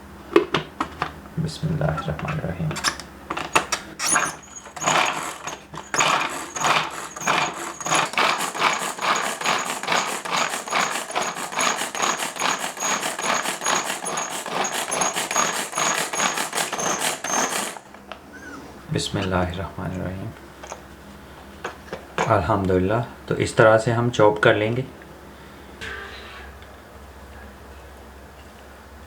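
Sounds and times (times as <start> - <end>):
hand food chopper chopping: 3.4 - 18.0.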